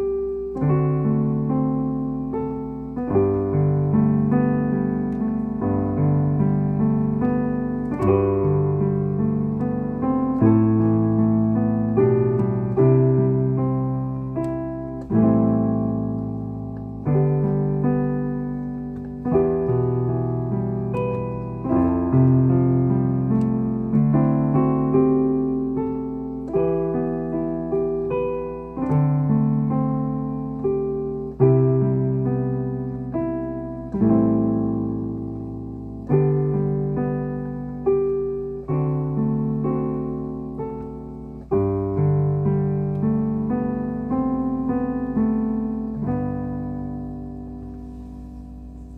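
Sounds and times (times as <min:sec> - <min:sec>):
piano playing slow chords: 0:00.0 - 0:48.9.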